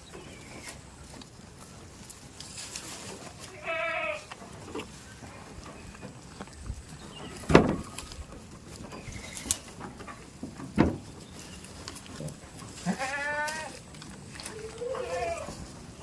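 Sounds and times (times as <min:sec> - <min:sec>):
goat bleating: 0:03.4 - 0:04.4, 0:12.7 - 0:15.7.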